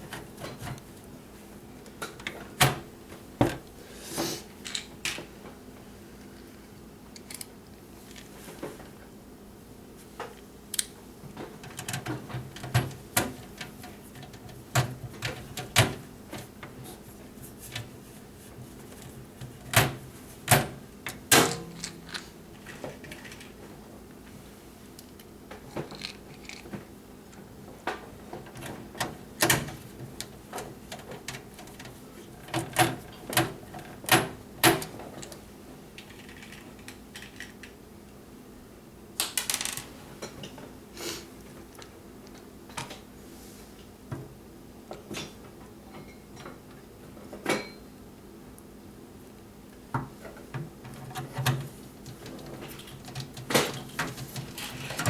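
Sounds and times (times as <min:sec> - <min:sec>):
clicks and metallic clatter of parts: 0:04.6 - 0:05.3, 0:07.2 - 0:07.5, 0:18.9 - 0:23.6, 0:25.0 - 0:26.8, 0:36.0 - 0:37.8, 0:39.2 - 0:40.7, 0:50.2 - 0:55.0.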